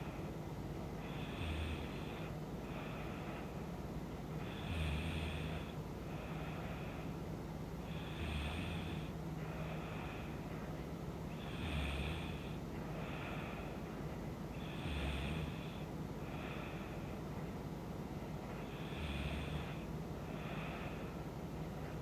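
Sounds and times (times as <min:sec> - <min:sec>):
soft breathing: 0:00.0 - 0:22.0
woman snoring: 0:01.0 - 0:02.3, 0:04.4 - 0:06.4, 0:07.9 - 0:09.1, 0:11.4 - 0:12.6, 0:14.6 - 0:15.8, 0:18.7 - 0:19.9.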